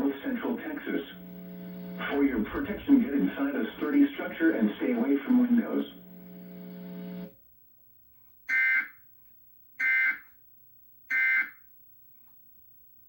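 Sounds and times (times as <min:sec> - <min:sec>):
low buzzing tone: 0:01.2 - 0:03.9, 0:05.9 - 0:07.3.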